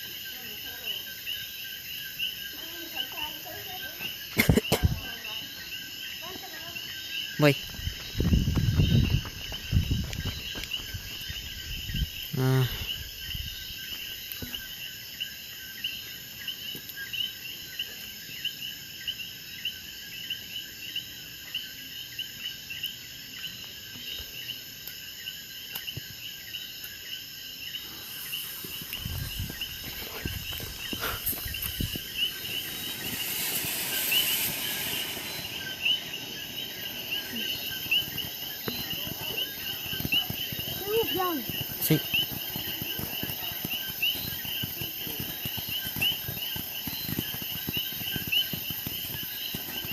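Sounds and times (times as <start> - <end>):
crickets chirping: 0.0 - 49.9
broad hissing rush: 27.8 - 49.9.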